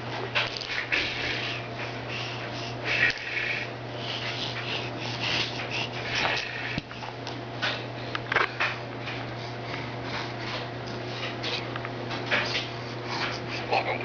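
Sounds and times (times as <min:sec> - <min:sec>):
steady low hum: 0:00.0 - 0:14.0
baby grunting: 0:13.6 - 0:14.0.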